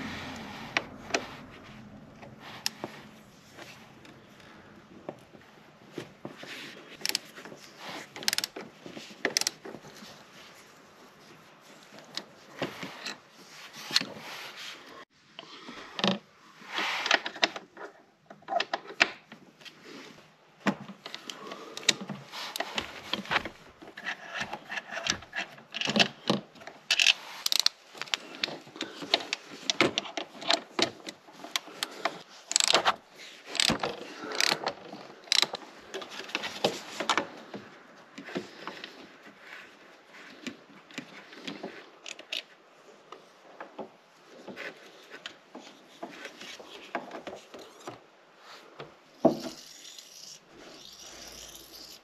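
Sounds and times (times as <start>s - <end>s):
hand tools and metal parts clicking: 6.5s - 10.0s, 21.0s - 37.4s, 40.4s - 42.5s, 49.1s - 52.0s.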